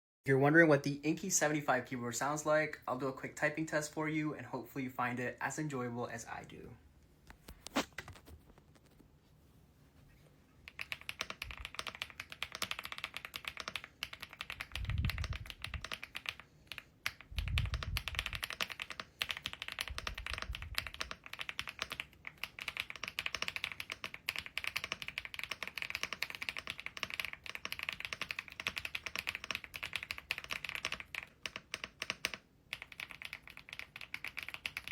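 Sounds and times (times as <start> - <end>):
mechanical keyboard typing: 10.7 - 34.9.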